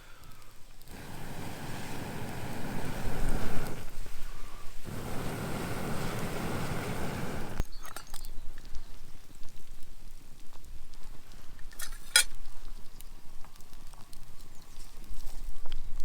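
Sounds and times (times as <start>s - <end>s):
wind buffeting microphone: 0.9s - 7.6s.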